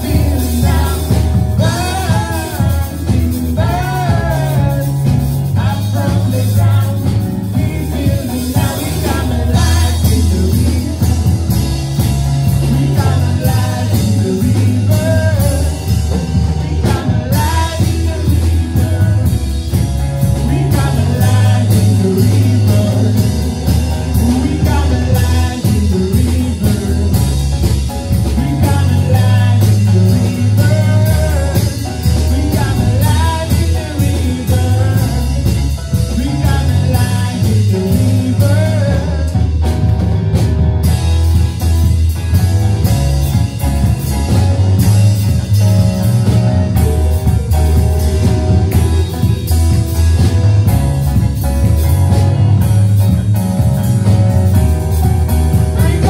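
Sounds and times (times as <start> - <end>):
person singing: 0.0 - 39.7, 45.6 - 49.6, 55.4 - 56.0
bass: 0.0 - 56.0
drum kit beat: 0.0 - 56.0
guitar: 0.0 - 56.0.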